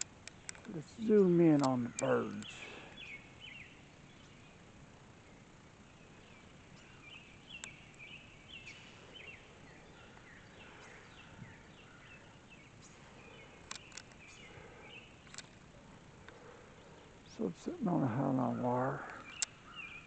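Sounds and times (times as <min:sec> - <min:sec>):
sharp clicks: 0:00.0 - 0:00.8, 0:01.4 - 0:02.6, 0:07.6 - 0:08.0, 0:13.6 - 0:14.3, 0:15.2 - 0:16.4, 0:19.1 - 0:19.6
small birds chirping: 0:00.0 - 0:20.0.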